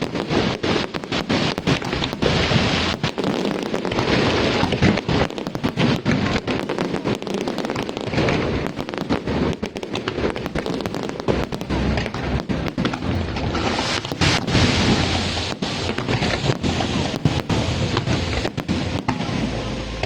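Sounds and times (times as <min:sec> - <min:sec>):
fireworks bangs and crackles: 0:00.0 - 0:20.0
continuous rumble: 0:17.5 - 0:20.0.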